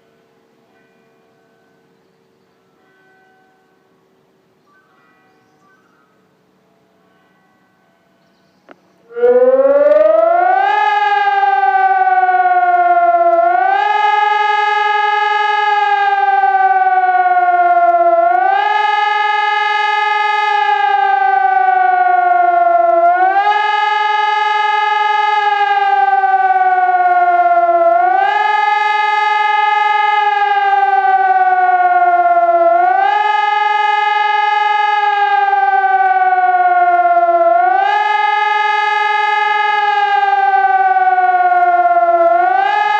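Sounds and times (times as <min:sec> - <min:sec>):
wailing warning siren: 0:09.0 - 0:42.9.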